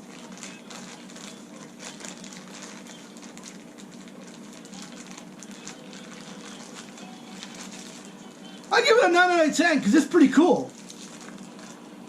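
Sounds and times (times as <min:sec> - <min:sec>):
faint crackling: 0:00.0 - 0:08.8
steady low hum: 0:00.0 - 0:12.0.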